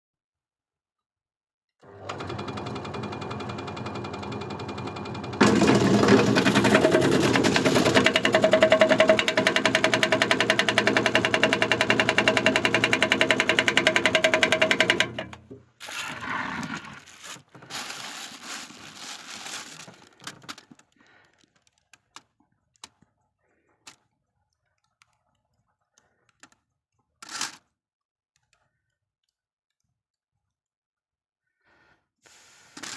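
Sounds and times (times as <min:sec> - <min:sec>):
shredding machine motor rattling: 0:01.9 - 0:15.6.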